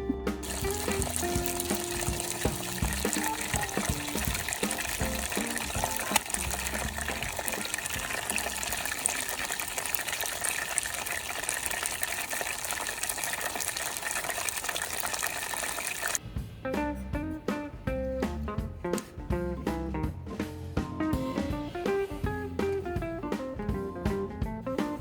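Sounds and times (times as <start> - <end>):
food deep-frying in oil: 0.4 - 16.2.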